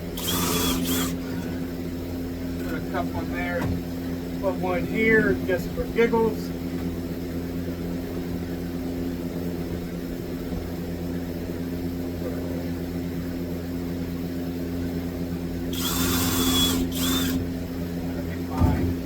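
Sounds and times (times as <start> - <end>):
low machine hum: 0.0 - 19.0
power drill driving a screw: 0.1 - 1.2, 15.7 - 17.4.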